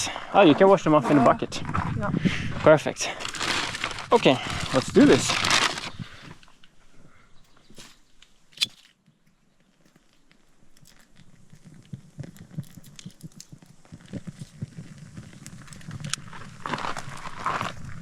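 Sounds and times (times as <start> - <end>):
twigs and paper rustling: 2.7 - 6.8, 7.5 - 18.0.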